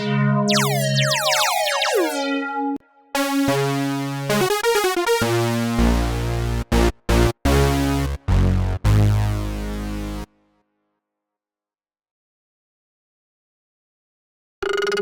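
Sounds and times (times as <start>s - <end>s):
deep synth bass: 0.0s - 4.5s, 5.2s - 10.3s
synthesizer lead melody: 0.0s - 10.3s.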